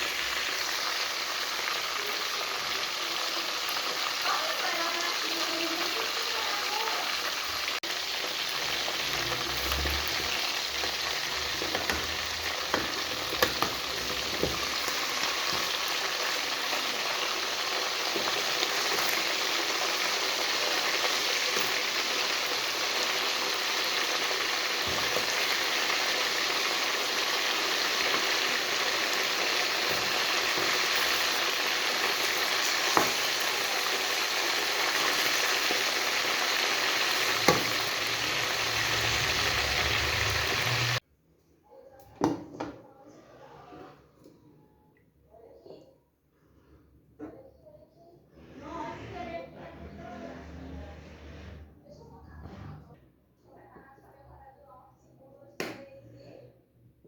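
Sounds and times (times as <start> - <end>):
food sizzling in a pan: 0.0 - 41.0.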